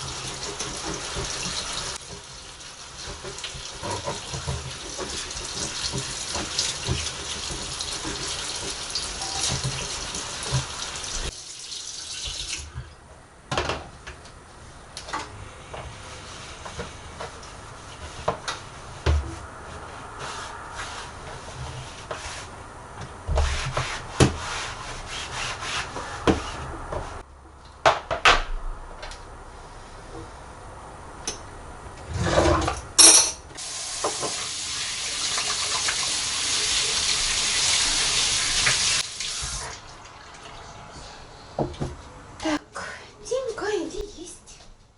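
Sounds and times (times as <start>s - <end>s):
sink tap running: 0.0s - 12.7s, 33.6s - 39.7s.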